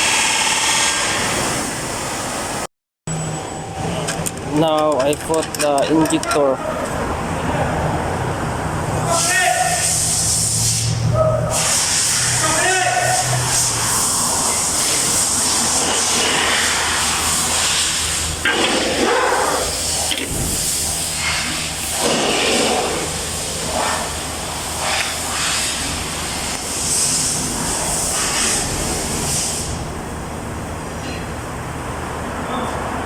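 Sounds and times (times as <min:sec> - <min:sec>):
cleaning machine hissing: 0:00.0 - 0:02.7, 0:09.7 - 0:29.9.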